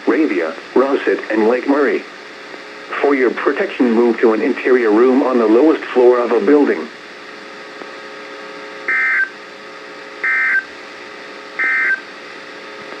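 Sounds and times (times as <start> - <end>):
short digital data bursts: 8.9 - 9.3, 10.2 - 10.7, 11.6 - 12.0.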